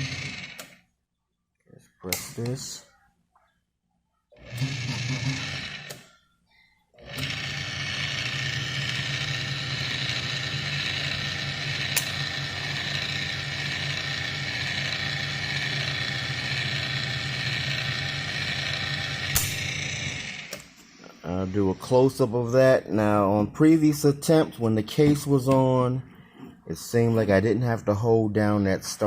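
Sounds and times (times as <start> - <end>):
key duplicator motor running: 0.0 - 0.8, 4.4 - 6.0, 7.0 - 20.8.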